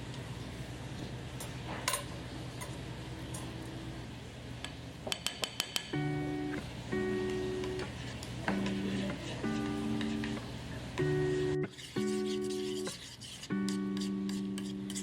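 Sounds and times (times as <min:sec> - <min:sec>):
music: 0:06.0 - 0:07.9, 0:08.5 - 0:10.4, 0:11.0 - 0:12.9, 0:13.6 - 0:15.0
steady low hum: 0:06.0 - 0:15.0.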